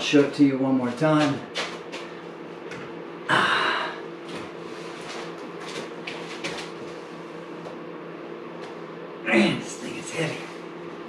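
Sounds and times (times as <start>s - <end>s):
steady low hum: 0.0s - 11.0s
man exhaling with effort: 3.3s - 4.0s.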